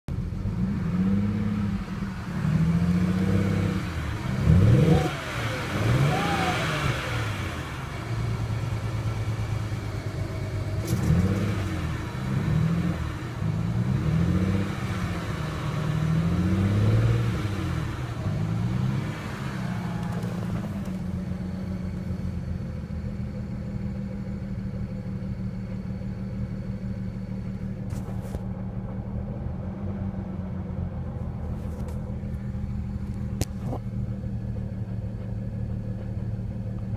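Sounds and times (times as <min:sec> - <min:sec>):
car engine idling: 0:00.1 - 0:36.9
misfiring car engine revving: 0:00.2 - 0:23.2.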